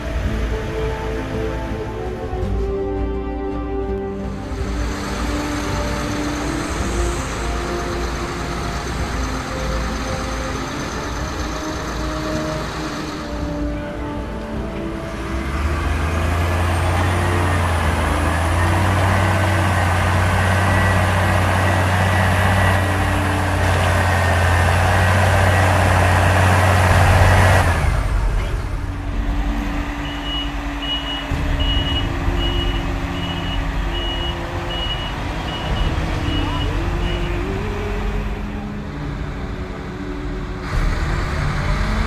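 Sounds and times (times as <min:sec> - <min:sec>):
diesel harvester running: 0:00.0 - 0:42.0
reversing alarm beeping: 0:29.9 - 0:37.6.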